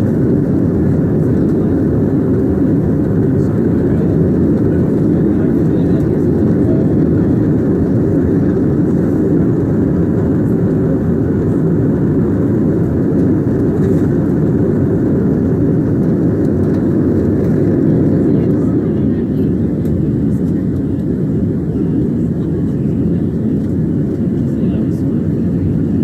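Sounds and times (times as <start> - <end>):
jet engines and rushing air: 0.0 - 26.0.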